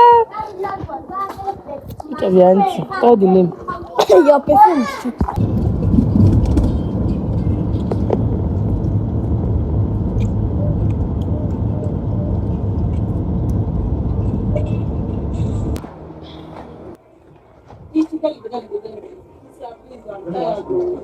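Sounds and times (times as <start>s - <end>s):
moving vehicle rumble: 5.2s - 18.0s.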